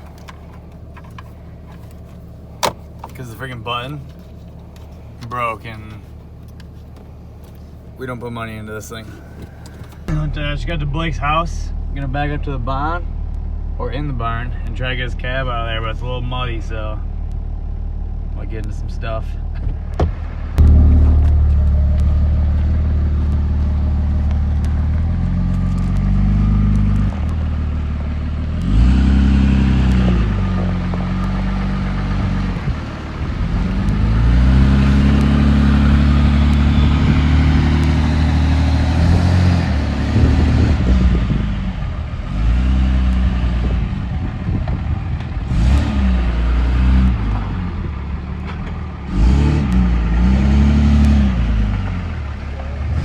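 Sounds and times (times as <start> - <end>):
diesel engine revving: 19.8 - 53.0.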